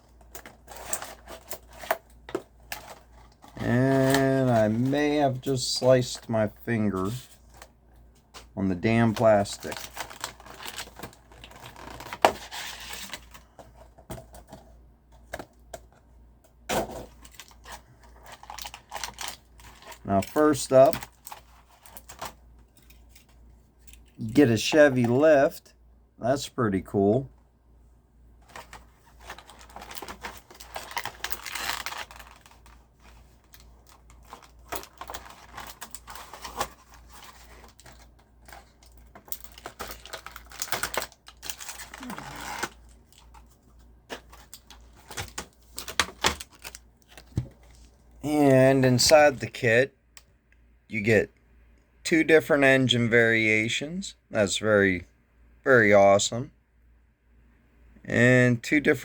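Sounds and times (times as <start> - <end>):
packaging rustling: 0.0 - 6.2, 8.4 - 14.6, 17.0 - 24.7, 28.4 - 48.0
plastic packaging snapping: 29.3 - 32.7, 38.6 - 42.8.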